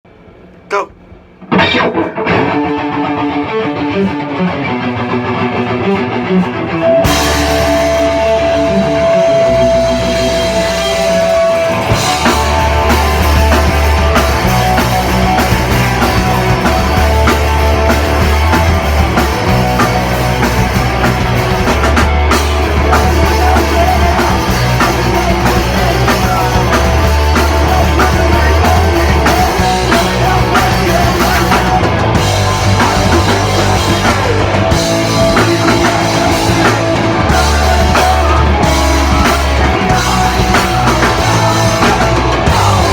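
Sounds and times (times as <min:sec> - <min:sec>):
loud rock music: 0:00.7 - 0:42.9.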